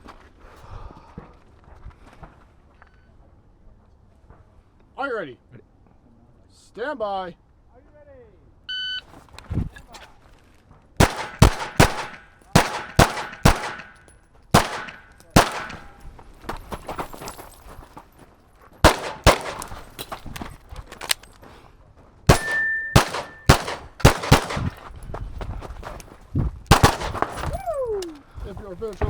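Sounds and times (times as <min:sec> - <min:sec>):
short steady beep: 0:08.7 - 0:09.0, 0:22.4 - 0:23.5
fainter shots and clicks: 0:11.0 - 0:14.0, 0:14.6 - 0:16.0, 0:18.8 - 0:19.8, 0:22.3 - 0:24.8, 0:26.7 - 0:27.4
pistol shots: 0:11.0 - 0:16.0, 0:18.8 - 0:20.0, 0:22.3 - 0:24.9, 0:26.7 - 0:27.5.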